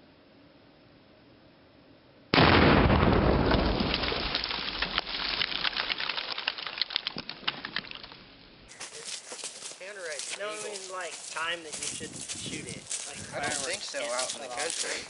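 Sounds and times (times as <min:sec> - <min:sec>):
explosion blast with rumble: 0:02.3 - 0:05.5
debris pattering on ground: 0:02.4 - 0:15.0.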